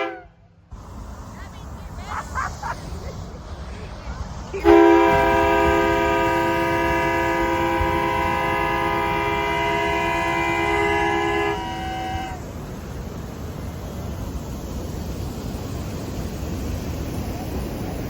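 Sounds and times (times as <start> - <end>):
train air horn blast: 0.0 - 0.5, 4.6 - 12.5.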